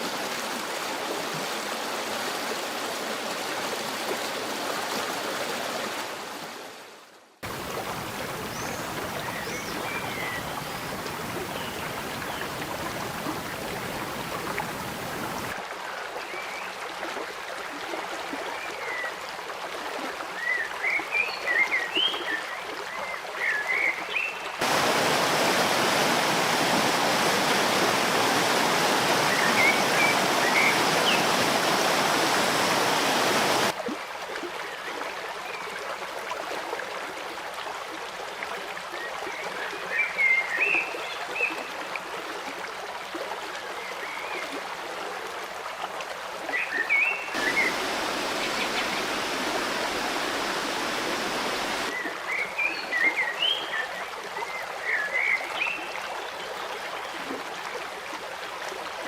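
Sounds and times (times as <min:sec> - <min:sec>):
stream running: 0:00.0 - 0:59.0
small birds chirping: 0:07.5 - 0:15.5.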